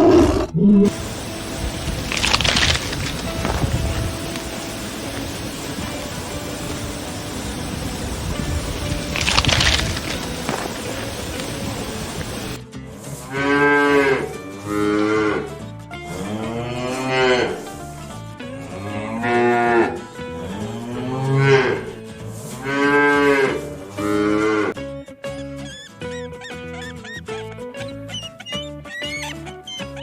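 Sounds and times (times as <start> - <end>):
cattle mooing: 16.1 - 17.7, 18.6 - 22.0, 22.6 - 24.7.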